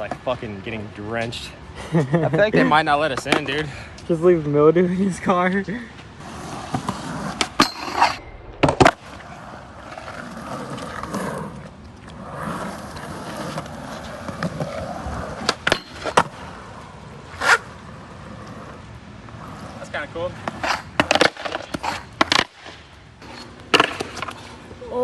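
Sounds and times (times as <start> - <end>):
skateboard wheels rolling on wet concrete: 0.0 - 25.0
skateboard popping and landing: 6.2 - 18.7, 20.4 - 24.7.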